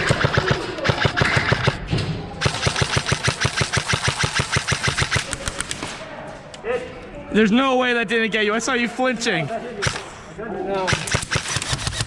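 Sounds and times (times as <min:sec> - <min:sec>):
airsoft guns firing: 0:00.0 - 0:06.0, 0:09.8 - 0:10.1, 0:10.9 - 0:12.0.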